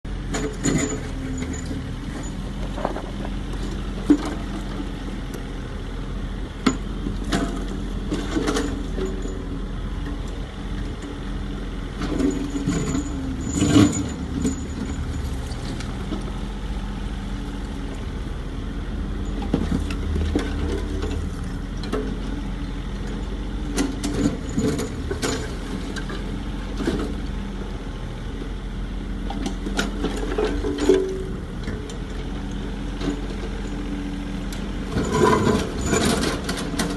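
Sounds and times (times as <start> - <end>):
excavator diesel engine: 0.0 - 36.9
machine clanks and knocks: 0.3 - 4.8, 6.6 - 9.5, 12.0 - 16.3, 23.0 - 27.2, 29.3 - 32.2, 34.8 - 36.9.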